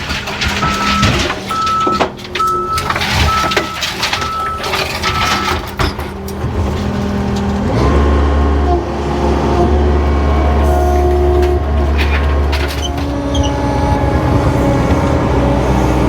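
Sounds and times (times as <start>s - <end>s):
debris knocking: 0.0s - 7.6s
diesel engine running: 0.0s - 16.0s
backup alarm beeping: 0.6s - 5.6s.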